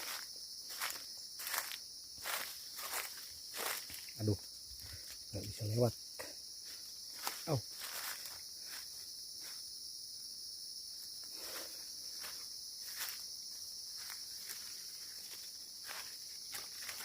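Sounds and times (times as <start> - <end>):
footsteps on leaf litter: 0.0 - 4.2, 6.6 - 9.0, 13.9 - 17.0
forest insects droning: 0.0 - 17.0.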